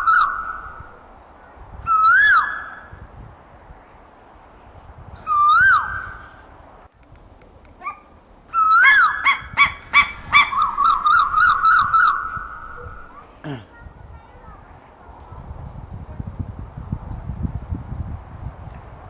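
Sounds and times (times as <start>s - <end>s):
bird whistled calls: 0.0s - 1.0s, 1.9s - 3.0s, 5.2s - 6.4s, 8.5s - 13.3s.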